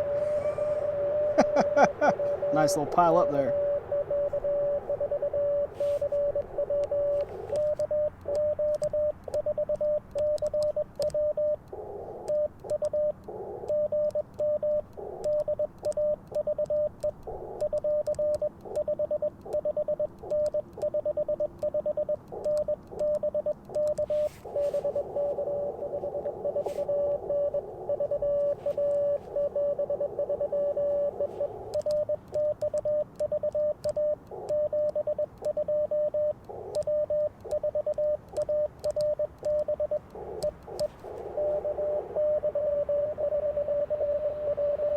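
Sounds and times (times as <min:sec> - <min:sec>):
radio band noise hiss: 0:00.0 - 0:09.3, 0:24.0 - 0:31.8, 0:40.0 - 0:44.9
morse code tone: 0:00.0 - 0:44.9.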